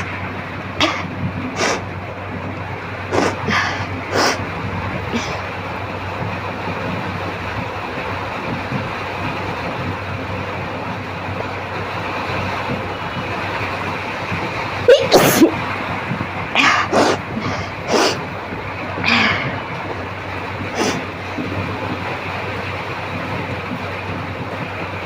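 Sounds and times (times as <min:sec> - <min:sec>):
person sneezing loudly: 0:03.1 - 0:04.4, 0:14.9 - 0:15.6, 0:16.6 - 0:18.2.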